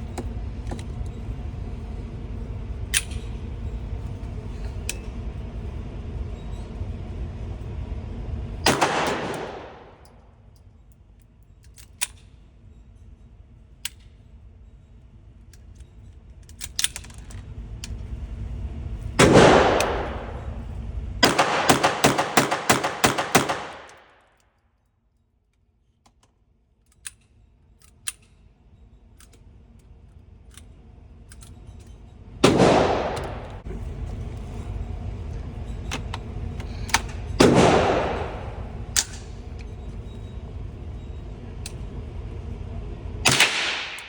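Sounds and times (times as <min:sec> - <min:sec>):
pistol gunshots: 0:08.7 - 0:10.0, 0:19.2 - 0:20.4, 0:21.2 - 0:24.1, 0:32.4 - 0:33.7, 0:37.4 - 0:39.1, 0:43.3 - 0:44.0.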